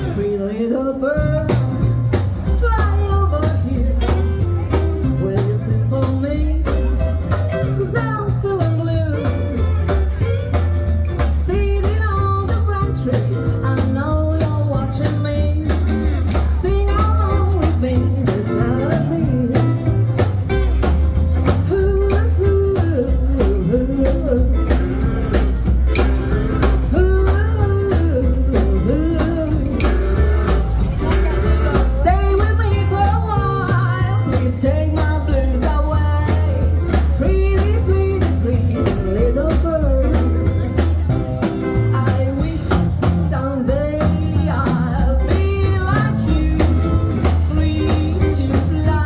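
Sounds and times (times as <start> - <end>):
person singing: 0.0 - 10.6, 11.2 - 20.2, 21.4 - 49.0
bass line: 0.0 - 49.0
guitar: 0.0 - 49.0
drum beat: 15.2 - 49.0.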